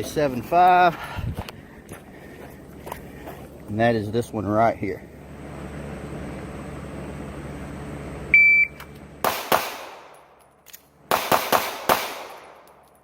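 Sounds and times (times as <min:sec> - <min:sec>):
shot timer beep: 0:08.3 - 0:08.8
pistol shots: 0:09.2 - 0:10.4, 0:11.1 - 0:12.8.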